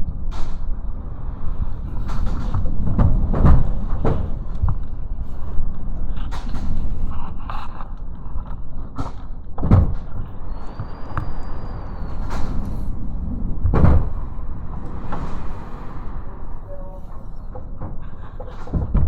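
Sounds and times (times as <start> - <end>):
wind gusting on microphone: 0.0 - 19.0
heavy bangs: 8.9 - 19.0.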